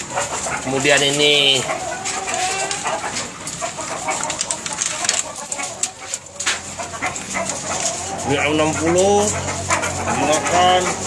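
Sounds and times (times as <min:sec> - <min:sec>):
roosters clucking: 0:00.0 - 0:11.0
tapping and rustling: 0:02.0 - 0:10.0.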